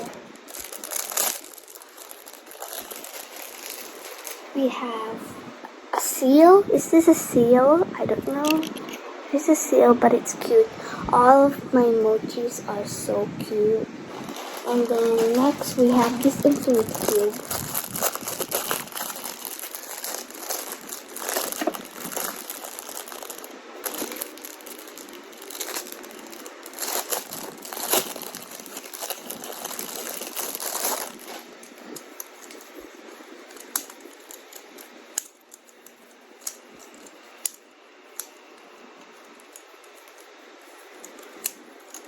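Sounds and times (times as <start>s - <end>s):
plastic packaging crinkling: 0.0s - 4.6s, 14.1s - 37.3s, 39.3s - 42.0s.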